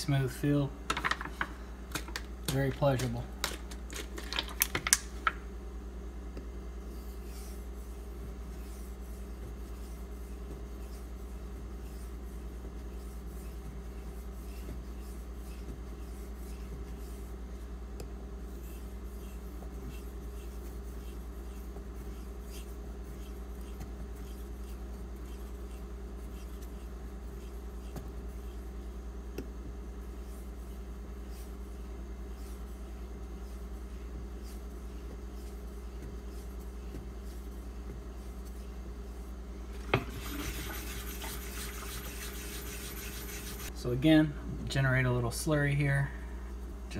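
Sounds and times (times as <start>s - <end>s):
knife scraping on whetstone: 39.8s - 43.7s.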